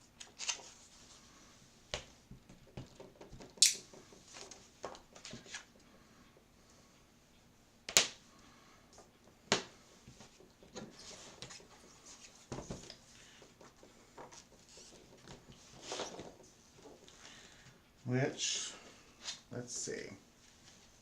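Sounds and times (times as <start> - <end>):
paper rustling: 0.2 - 0.9.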